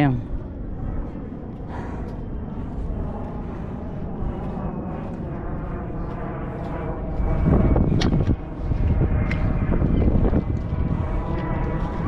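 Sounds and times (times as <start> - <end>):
engine drone: 0.0 - 12.0.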